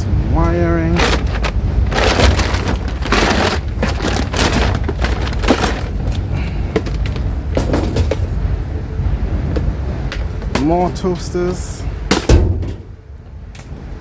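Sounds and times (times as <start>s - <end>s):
rubbish clattering and knocking: 0.0s - 8.7s, 9.6s - 13.0s
steady low rumble: 0.0s - 14.0s
rubbish rustling: 0.4s - 8.5s.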